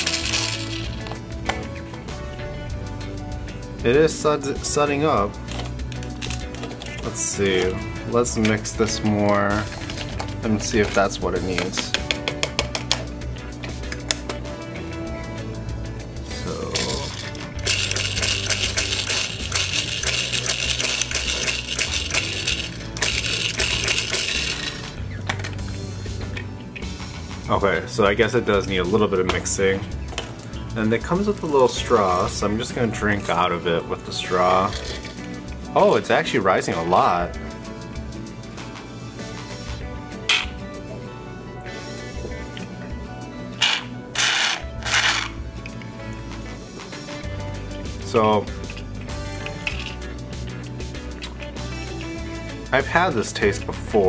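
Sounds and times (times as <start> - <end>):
plastic toy clicking and rattling: 0.0 - 1.0, 16.8 - 25.5, 43.6 - 45.4
background music with low beat: 0.0 - 54.0.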